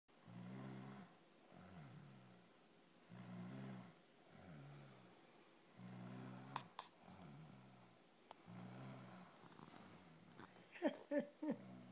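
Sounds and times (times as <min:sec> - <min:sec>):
person snoring: 0:00.2 - 0:02.4, 0:03.0 - 0:05.1, 0:05.7 - 0:10.6
soft breathing: 0:01.0 - 0:10.8.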